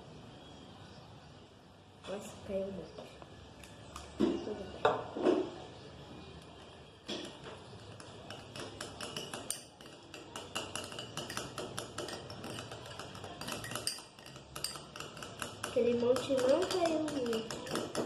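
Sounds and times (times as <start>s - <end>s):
spoon clinking against plastic bowl: 7.1s - 18.0s.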